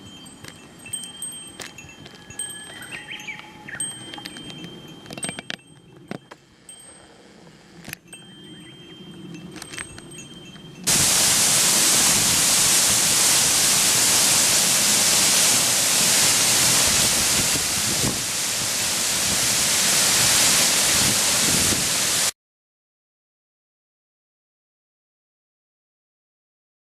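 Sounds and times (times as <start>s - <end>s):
waterfall rushing: 10.9s - 22.3s.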